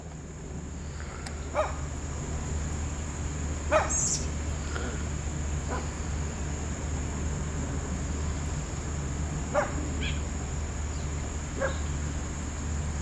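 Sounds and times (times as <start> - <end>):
dog barking: 1.5 - 1.8, 3.7 - 4.1, 5.7 - 5.9, 9.5 - 9.8, 11.6 - 11.8.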